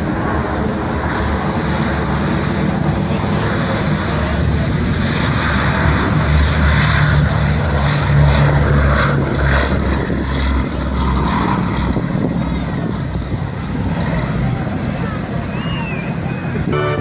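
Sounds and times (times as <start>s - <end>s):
propeller plane engines droning: 0.0s - 17.0s.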